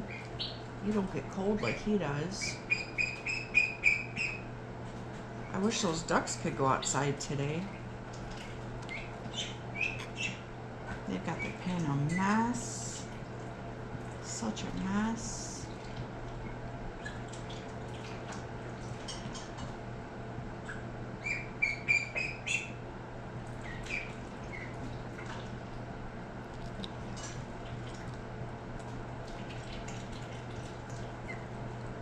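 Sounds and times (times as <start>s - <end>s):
ducks peeping: 0.0s - 1.8s, 2.4s - 4.5s, 7.7s - 13.1s, 16.4s - 19.8s, 20.6s - 25.5s, 31.2s - 31.6s
steady low hum: 0.0s - 32.0s.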